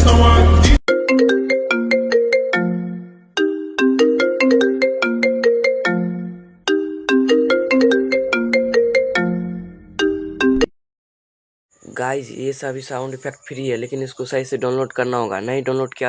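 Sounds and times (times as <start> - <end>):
phone ringtone tune: 0.9 - 10.7.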